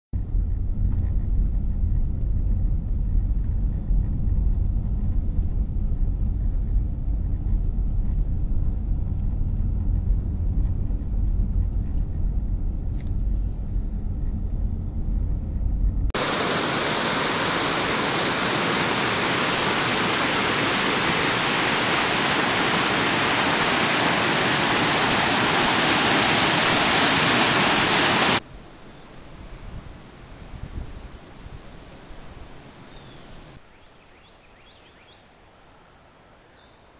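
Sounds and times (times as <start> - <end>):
gusty wind rumble on microphone: 0.2 - 33.6
loud steady hiss: 16.2 - 33.6.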